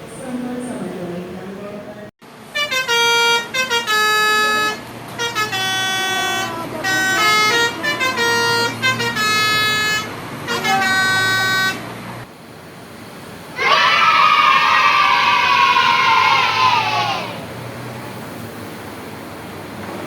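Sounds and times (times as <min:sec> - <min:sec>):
multi-tone musical bus horn: 0:02.4 - 0:12.3.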